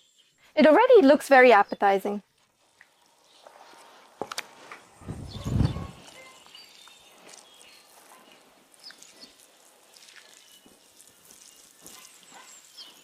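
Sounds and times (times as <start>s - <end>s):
faint high chirps: 5.0s - 9.2s.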